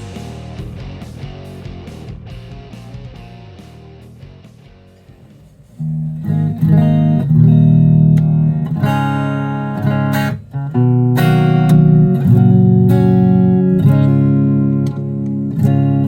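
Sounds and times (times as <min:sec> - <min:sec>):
guitar chords strummed: 0:00.0 - 0:16.0.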